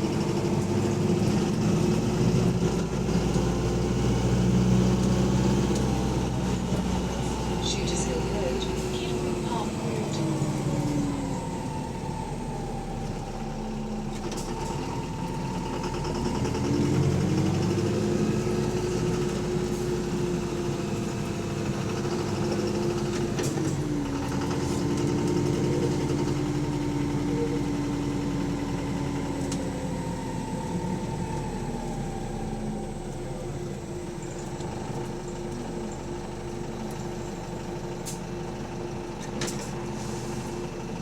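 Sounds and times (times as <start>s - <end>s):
engine heavy knocking: 0.0s - 28.5s
bus diesel engine running: 0.0s - 41.0s.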